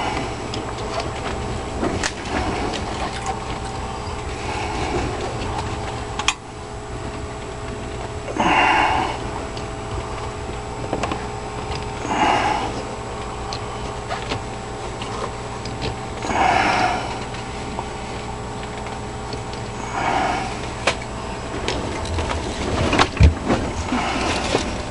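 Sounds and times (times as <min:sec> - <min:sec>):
steady mechanical hum: 0:00.0 - 0:24.9
person breathing: 0:08.3 - 0:09.3, 0:12.0 - 0:12.9, 0:16.2 - 0:17.2, 0:19.8 - 0:20.7.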